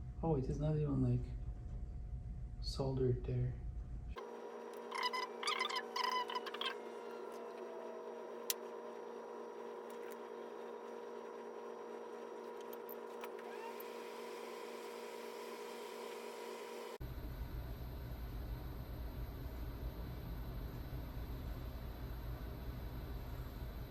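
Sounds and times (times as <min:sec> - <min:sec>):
electrical equipment hum: 0:00.0 - 0:23.9.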